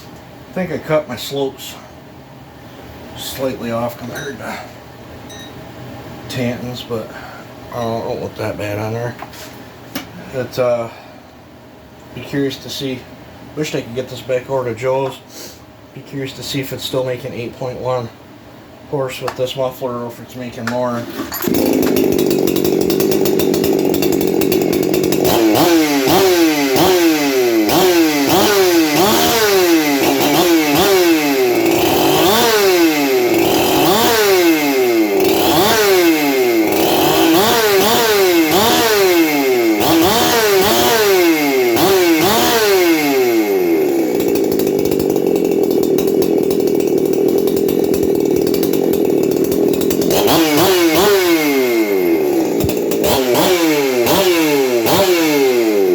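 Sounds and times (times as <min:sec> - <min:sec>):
chainsaw revving: 0:21.0 - 0:55.9.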